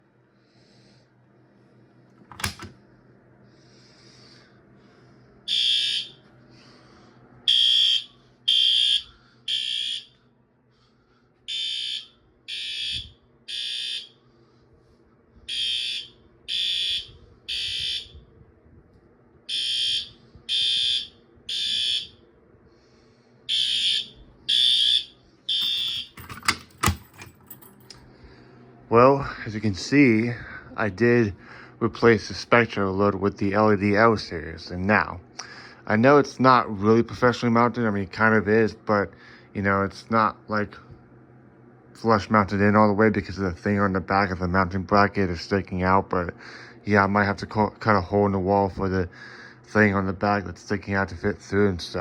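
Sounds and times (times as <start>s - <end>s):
fire alarm horn beeping: 5.4s - 6.3s, 7.4s - 10.2s, 11.5s - 14.2s, 15.5s - 18.3s, 19.5s - 22.2s, 23.5s - 27.0s.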